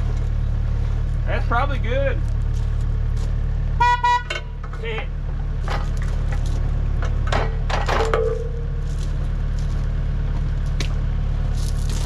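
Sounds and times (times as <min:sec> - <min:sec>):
diesel engine running: 0:00.0 - 0:12.0
metal knocks: 0:07.0 - 0:08.8.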